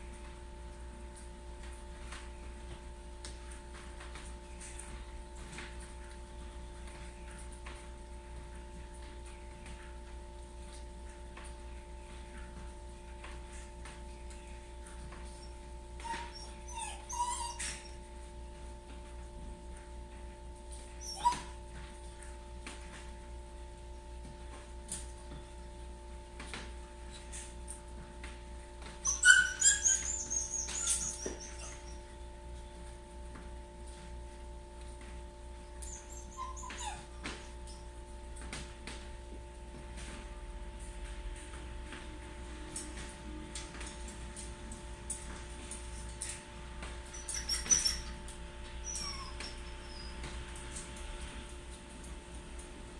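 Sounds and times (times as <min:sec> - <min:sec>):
dog whining and whimpering: 0:15.3 - 0:18.2, 0:21.0 - 0:21.7, 0:29.0 - 0:32.2, 0:35.8 - 0:37.8, 0:47.0 - 0:50.8.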